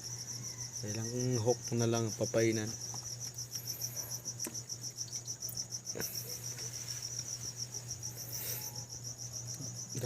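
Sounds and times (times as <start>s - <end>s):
crickets chirping: 0.0s - 10.0s
low steady hum: 0.0s - 10.0s.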